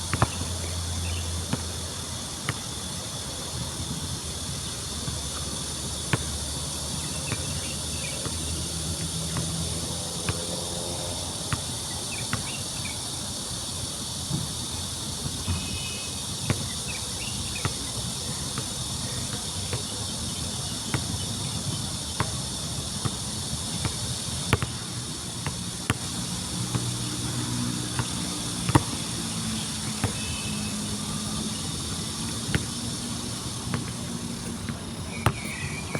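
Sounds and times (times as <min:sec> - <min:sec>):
insects chirring: 0:00.0 - 0:35.9
basketball bouncing: 0:00.1 - 0:00.5, 0:24.5 - 0:24.8, 0:25.9 - 0:35.9
faint bird chirps: 0:35.0 - 0:35.9.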